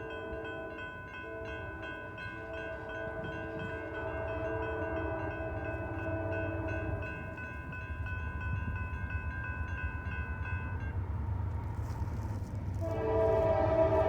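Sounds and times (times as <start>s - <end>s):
railroad crossing bells ringing: 0.0s - 11.4s
diesel train rumbling: 9.9s - 14.0s
locomotive air horn: 12.8s - 14.0s.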